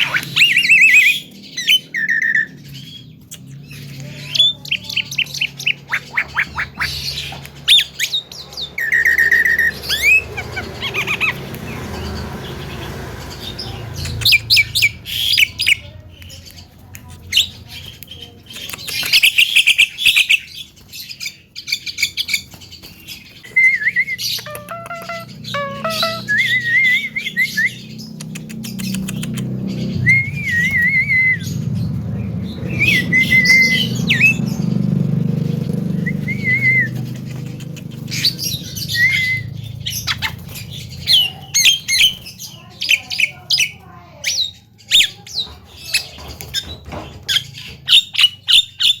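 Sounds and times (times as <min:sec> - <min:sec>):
bird whistled calls: 0:00.0 - 0:02.8, 0:23.4 - 0:27.9, 0:28.8 - 0:31.7, 0:32.6 - 0:34.6, 0:36.0 - 0:37.2, 0:38.0 - 0:43.8
bird chirps and clicks: 0:00.0 - 0:12.2, 0:13.2 - 0:49.0.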